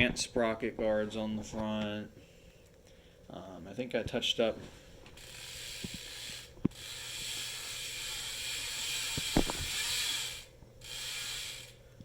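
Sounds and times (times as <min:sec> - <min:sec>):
bike hub ratchet buzzing: 0:05.0 - 0:12.0.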